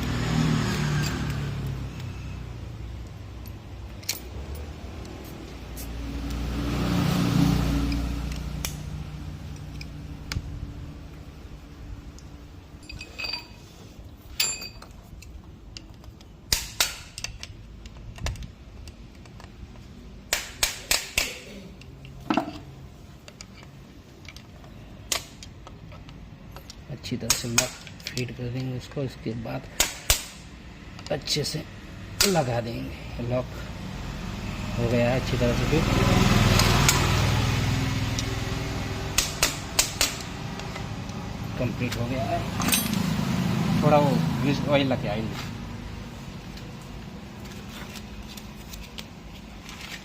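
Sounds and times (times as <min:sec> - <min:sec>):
low vehicle rumble: 0:00.0 - 0:16.0, 0:30.6 - 0:49.8
hand tools tapping on metal: 0:14.3 - 0:29.1, 0:39.1 - 0:43.1.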